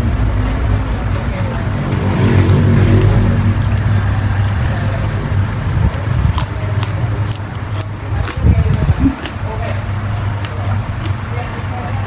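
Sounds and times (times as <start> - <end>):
mouth chewing rumble: 0.0 - 12.0
crisp crunching of leaves: 5.9 - 9.0.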